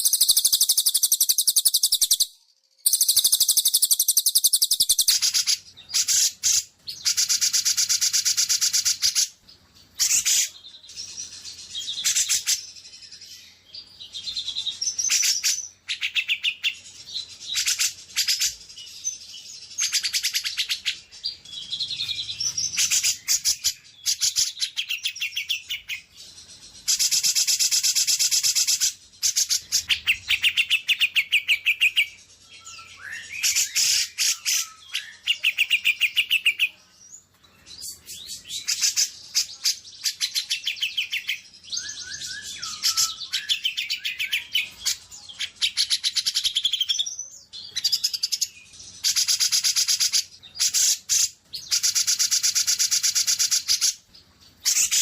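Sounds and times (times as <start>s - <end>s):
songbird trills and whistles: 0.0s - 9.3s, 26.8s - 36.8s, 37.8s - 54.0s.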